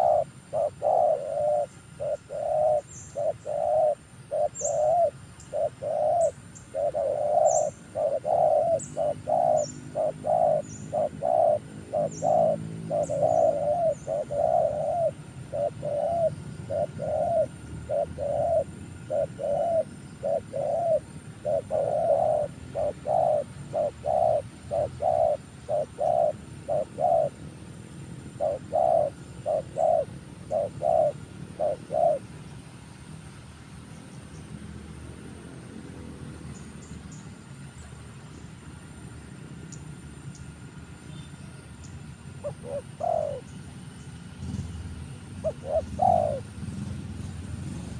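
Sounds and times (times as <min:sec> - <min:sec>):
dove cooing: 0:00.0 - 0:32.6, 0:42.3 - 0:47.9
small bird chirping: 0:00.0 - 0:32.6, 0:39.7 - 0:47.9.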